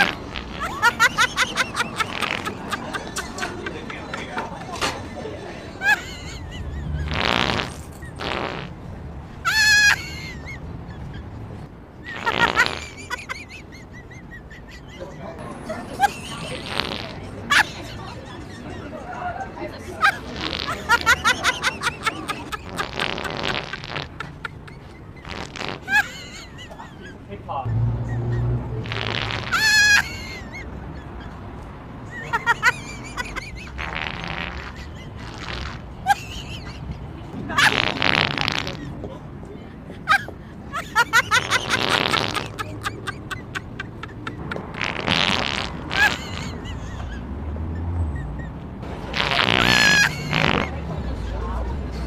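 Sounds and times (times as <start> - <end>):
fart noises: 0.0 - 2.7, 6.8 - 8.8, 12.1 - 13.2, 16.4 - 17.4, 20.1 - 26.1, 28.8 - 30.1, 33.3 - 36.0, 37.6 - 39.0, 41.0 - 42.7, 44.5 - 46.7, 49.0 - 50.8.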